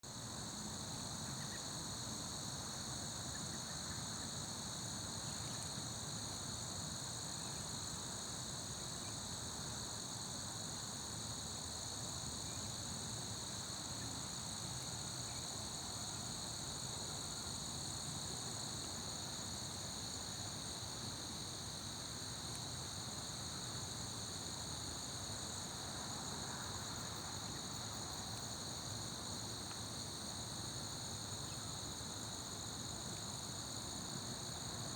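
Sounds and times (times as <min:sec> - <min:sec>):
insects chirping drone: 0:11.2 - 0:34.9.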